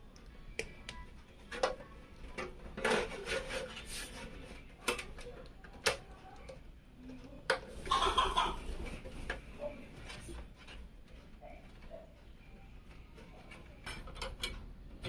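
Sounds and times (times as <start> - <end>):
rubbing and scraping: 2.7 - 4.8.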